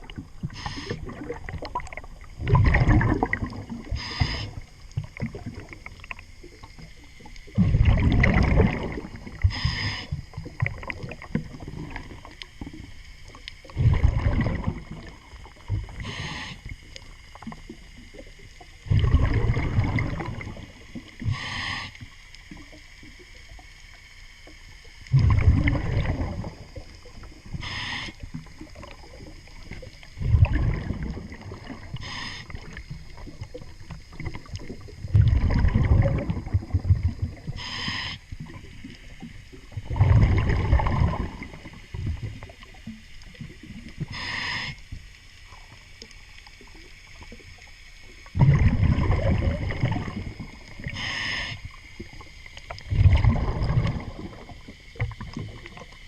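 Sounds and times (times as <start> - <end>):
exhaled bubbles burbling: 0.0 - 23.6, 24.9 - 44.7, 45.5 - 56.0
regulator inhale hiss: 0.4 - 1.2, 3.8 - 4.8, 9.3 - 10.4, 15.9 - 17.1, 21.2 - 22.3, 26.8 - 28.6, 31.8 - 33.0, 37.4 - 39.2, 44.0 - 45.1, 50.1 - 52.2.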